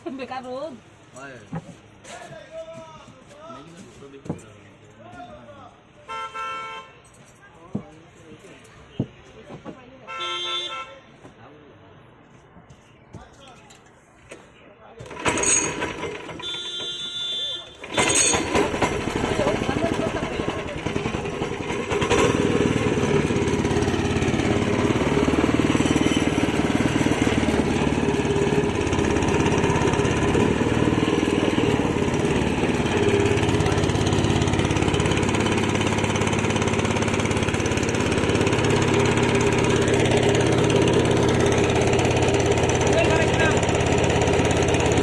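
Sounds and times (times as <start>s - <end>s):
small engine running: 15.0s - 16.8s, 17.8s - 45.0s.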